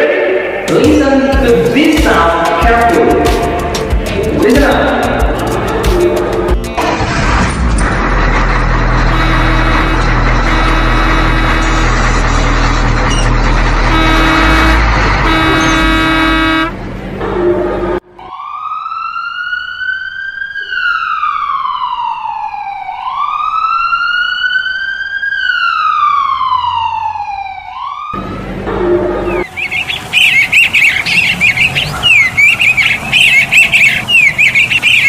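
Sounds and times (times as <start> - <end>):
road traffic: 0.0 - 35.0
wailing emergency siren: 8.3 - 16.6, 17.2 - 35.0.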